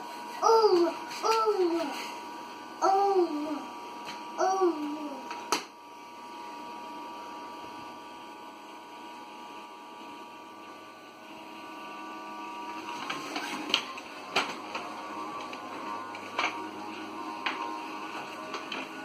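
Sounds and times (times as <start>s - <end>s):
vacuum cleaner humming: 0.0s - 19.0s
child gliding vocal sound: 0.3s - 2.2s, 2.8s - 3.7s, 4.4s - 5.3s.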